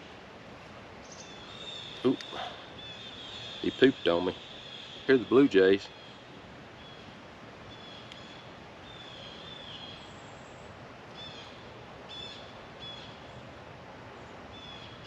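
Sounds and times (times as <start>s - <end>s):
blue jays calling: 1.0s - 10.3s.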